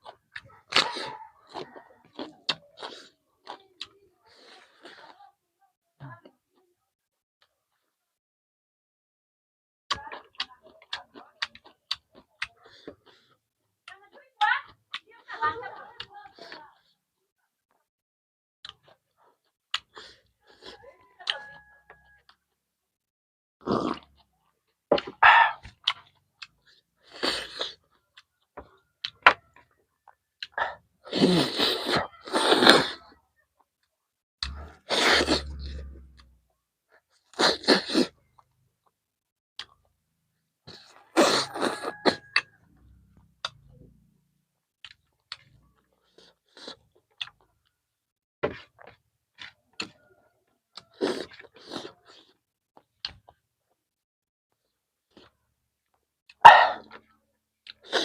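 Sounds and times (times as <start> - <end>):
person chewing and smacking: 0.0 - 5.2, 9.9 - 15.1, 18.6 - 21.4, 23.7 - 33.2, 34.4 - 36.4, 39.6 - 40.0, 40.7 - 44.1, 44.8 - 47.8, 48.5 - 50.0, 50.7 - 53.8, 54.6 - 58.0.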